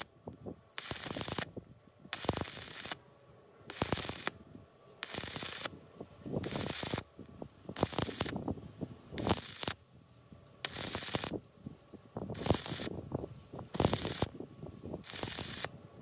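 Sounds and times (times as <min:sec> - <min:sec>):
welding arc crackling: 0:00.8 - 0:01.5, 0:02.1 - 0:03.0, 0:03.7 - 0:04.4, 0:05.0 - 0:05.7, 0:06.4 - 0:07.1, 0:07.8 - 0:08.4, 0:09.2 - 0:09.8, 0:10.6 - 0:11.4, 0:12.3 - 0:13.0, 0:13.7 - 0:14.4, 0:15.0 - 0:15.8.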